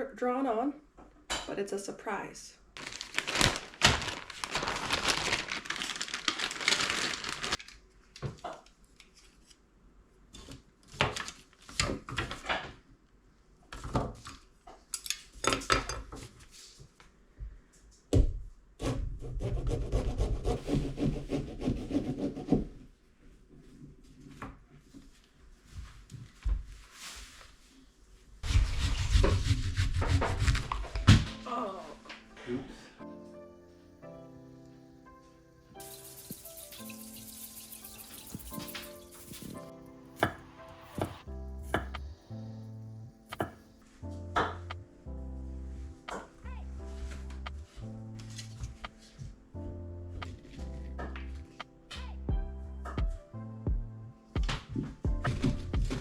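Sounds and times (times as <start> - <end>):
knife sawing through pumpkin: 19.2 - 22.6.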